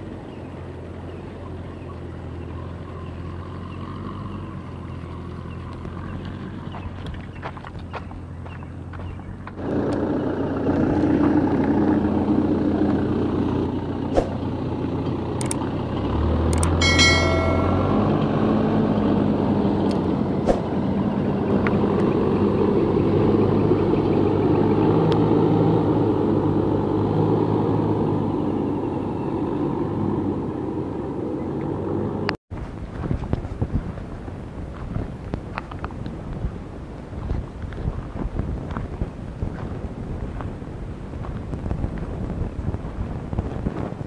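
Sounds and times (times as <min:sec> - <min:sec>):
small engine running: 0:00.7 - 0:32.3
sharp clicks: 0:15.4 - 0:15.6, 0:16.5 - 0:16.8.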